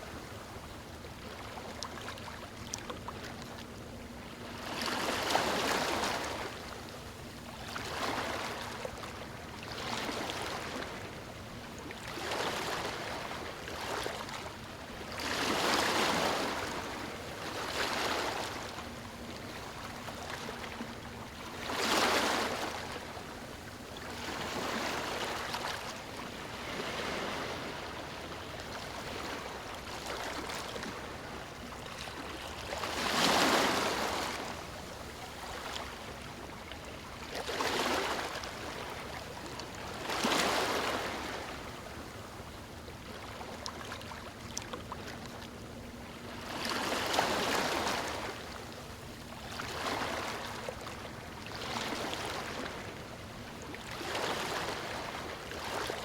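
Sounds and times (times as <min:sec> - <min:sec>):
waves breaking on stony shore: 0:32.8 - 0:34.5, 0:37.4 - 0:39.0.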